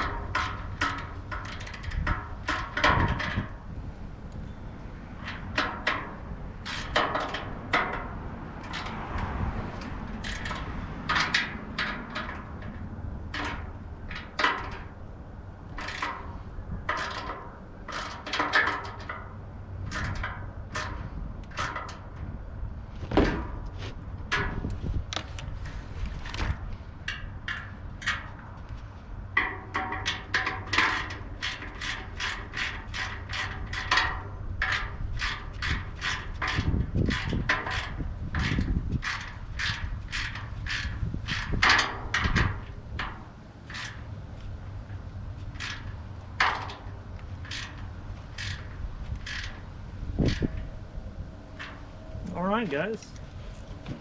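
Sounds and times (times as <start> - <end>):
ratchet wrench clicking: 45.4 - 49.6.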